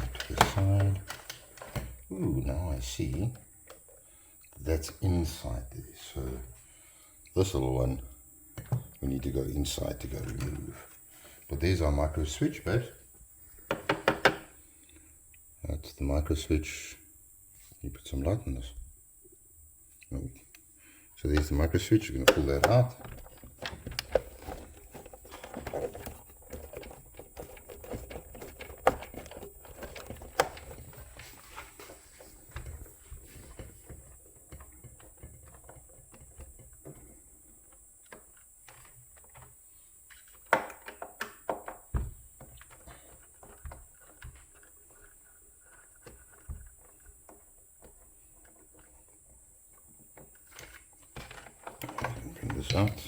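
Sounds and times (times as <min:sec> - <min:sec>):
clicks and taps on plastic and metal: 0:13.7 - 0:14.5, 0:22.2 - 0:31.9, 0:40.4 - 0:44.7.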